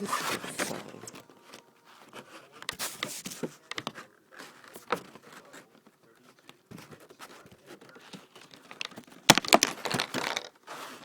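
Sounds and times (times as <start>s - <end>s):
toy packaging crinkling and rustling: 0.0s - 11.0s.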